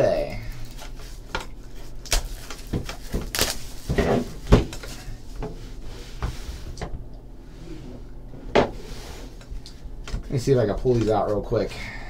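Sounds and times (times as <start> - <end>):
packaging being opened: 2.0 - 3.9
knocks and rustling: 2.6 - 5.6.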